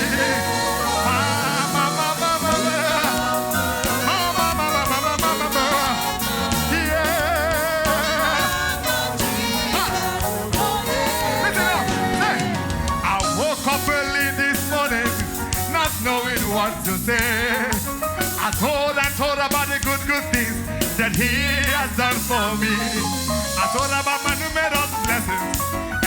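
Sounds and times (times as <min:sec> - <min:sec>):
singer with wide vibrato: 0:00.0 - 0:14.6
band with drums and bass: 0:00.0 - 0:26.0.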